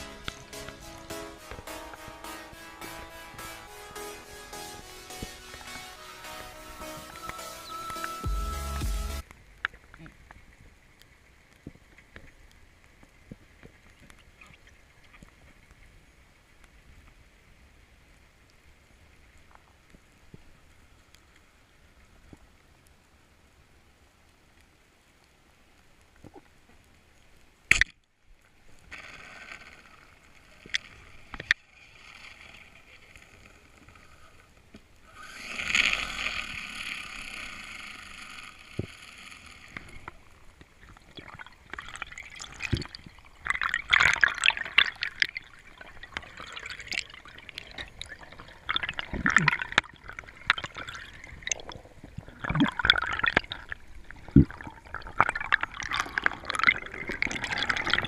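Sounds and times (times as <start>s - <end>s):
water splashing and gurgling: 0.0s - 16.4s, 28.6s - 58.0s.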